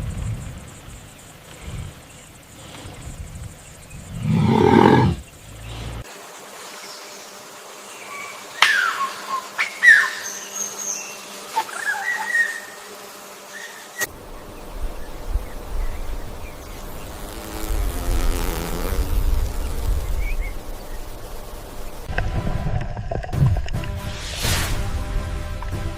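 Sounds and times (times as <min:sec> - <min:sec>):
birds chirping: 0:00.0 - 0:06.0
animal roaring: 0:04.1 - 0:05.2.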